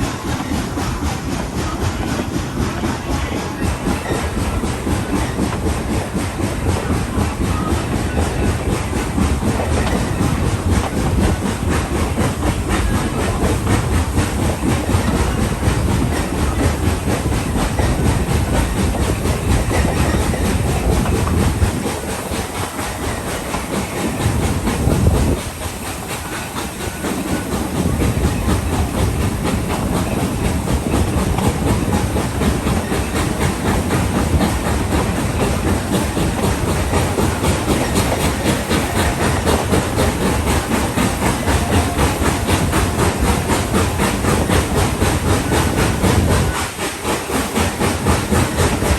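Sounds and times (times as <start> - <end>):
hiss: 0.0 - 48.9
train wheels rumbling and clacking: 0.0 - 48.9.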